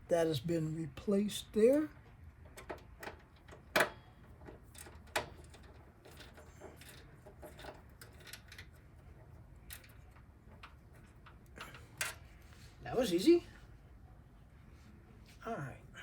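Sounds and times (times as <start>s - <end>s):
screwdriver clicks and scrapes on metal: 1.6s - 12.6s.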